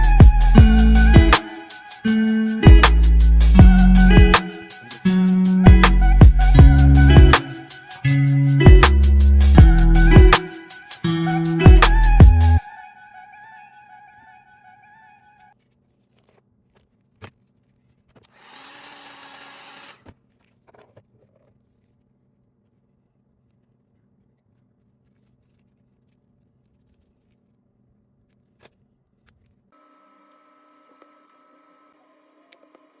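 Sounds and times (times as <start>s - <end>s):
background music: 0.0s - 15.1s
small power tool whirring: 18.2s - 20.1s, 29.8s - 33.0s.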